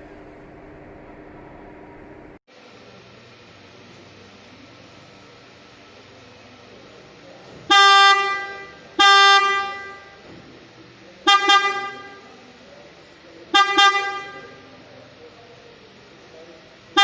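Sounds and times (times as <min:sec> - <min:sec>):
car horn honking: 0:07.6 - 0:10.2, 0:11.2 - 0:12.4, 0:13.5 - 0:14.7.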